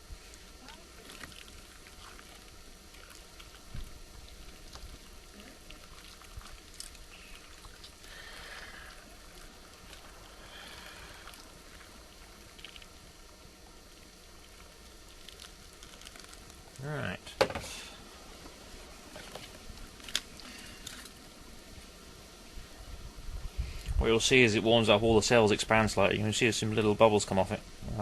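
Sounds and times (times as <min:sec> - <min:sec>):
water trickling and sloshing: 0:00.0 - 0:16.8
water splashing: 0:00.4 - 0:16.8.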